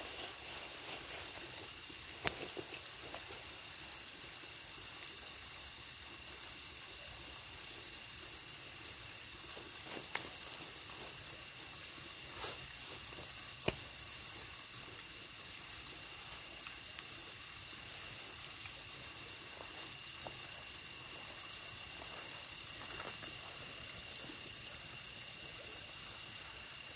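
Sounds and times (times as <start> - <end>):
campfire crackling and popping: 0.0 - 3.6, 9.5 - 11.3, 12.2 - 18.8, 21.2 - 23.6
steady hiss: 0.0 - 26.9.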